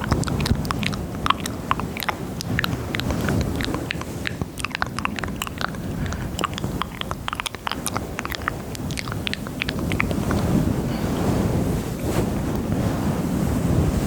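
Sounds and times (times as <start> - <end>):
wet mouth clicks and smacks: 0.0 - 10.8
low rustling: 7.7 - 14.0.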